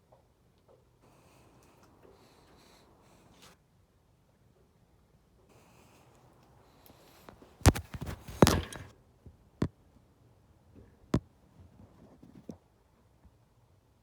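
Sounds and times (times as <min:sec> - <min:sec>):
rustling: 0:05.6 - 0:08.9
sharp knocks and clicks: 0:07.6 - 0:08.9.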